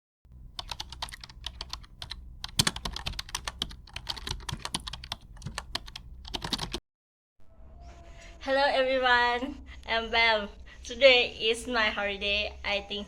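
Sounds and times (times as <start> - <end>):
faint low hum: 0.3 - 6.8
typing on a keyboard: 0.5 - 6.8.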